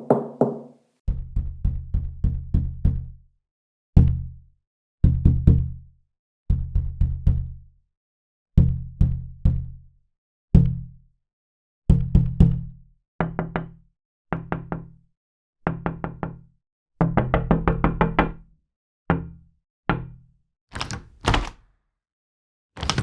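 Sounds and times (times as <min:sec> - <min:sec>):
knocking on a door: 0:00.0 - 0:00.8, 0:17.0 - 0:18.3.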